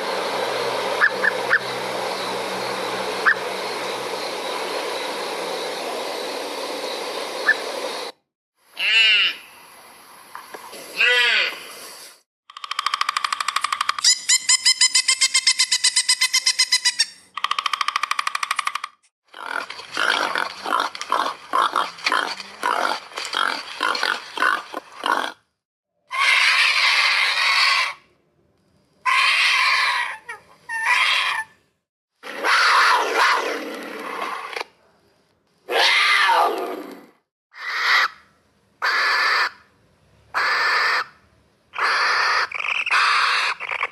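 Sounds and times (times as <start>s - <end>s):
rapid pulsed animal call: 0.8s - 5.1s
harsh animal calls: 1.0s - 3.8s, 8.8s - 9.5s, 26.1s - 28.1s, 29.0s - 31.6s, 35.7s - 36.9s, 37.5s - 39.7s, 40.3s - 41.2s, 41.8s - 43.9s.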